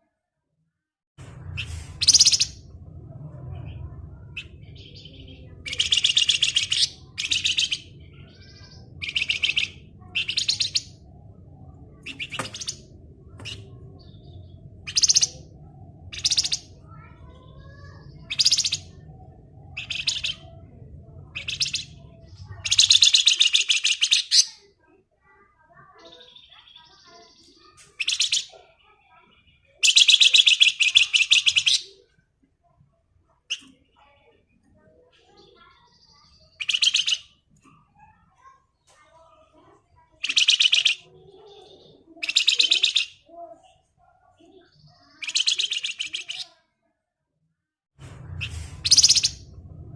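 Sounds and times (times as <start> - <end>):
low background rumble: 1.2 - 23.2, 48.0 - 49.9.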